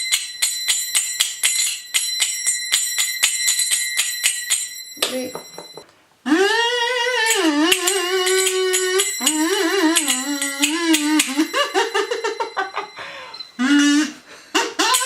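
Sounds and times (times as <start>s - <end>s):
clicking percussion: 0.0s - 5.2s, 7.3s - 11.5s
small bell ringing: 0.0s - 5.8s, 7.9s - 13.5s
buzzy kazoo-like melody: 6.2s - 11.9s, 13.0s - 15.0s.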